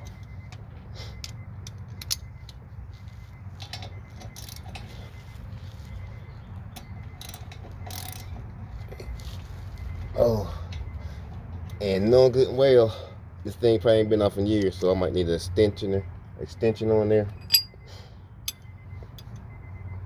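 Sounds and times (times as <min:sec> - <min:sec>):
socket and ratchet clinking: 0:07.2 - 0:08.3, 0:17.3 - 0:17.8.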